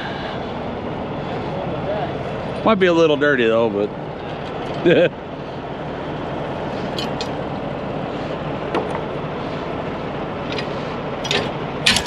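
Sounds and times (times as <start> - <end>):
engine rumble idling: 0.0 - 12.0
sharp metallic clicks: 10.5 - 12.0.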